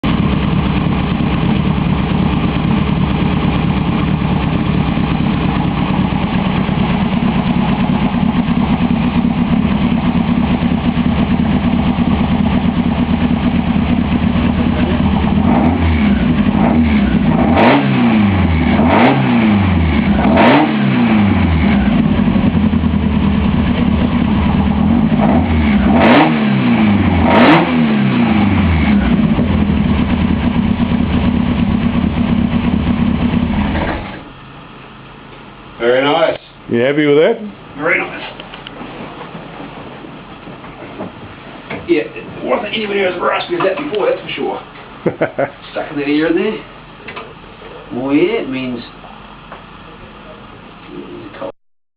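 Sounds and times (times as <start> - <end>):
car engine idling and revving: 0.0 - 35.8.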